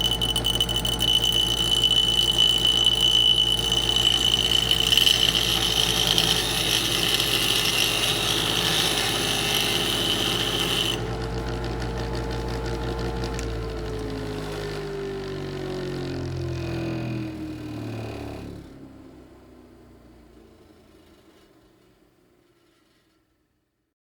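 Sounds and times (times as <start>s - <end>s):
electric grinder grinding: 0.0s - 18.8s.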